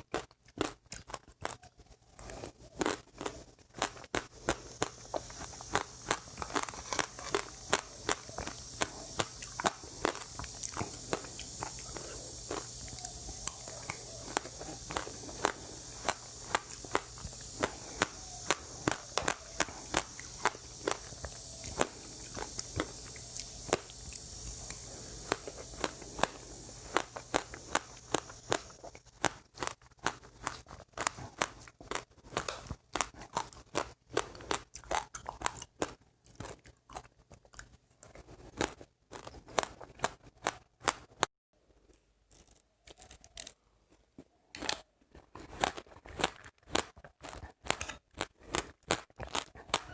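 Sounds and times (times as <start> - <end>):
seeds crunching while chewing: 0.0 - 41.3, 41.9 - 43.6, 44.5 - 49.9
steady hiss: 4.2 - 29.6.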